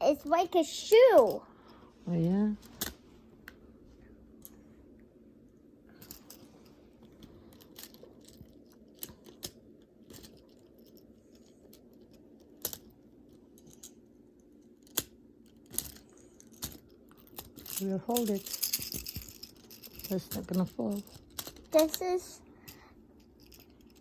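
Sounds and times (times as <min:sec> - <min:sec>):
magnetic toy pieces clicking: 0:14.6 - 0:24.0.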